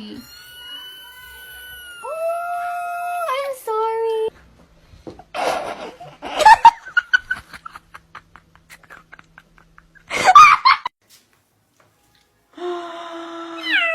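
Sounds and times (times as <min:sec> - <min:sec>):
person laughing: 0:05.4 - 0:10.9.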